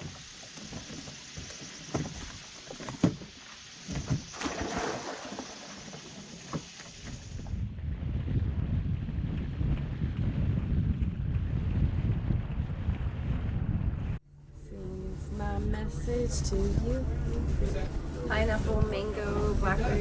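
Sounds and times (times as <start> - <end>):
water rushing along boat hull: 0.0 - 20.0
wind rumbling on microphone: 5.9 - 20.0.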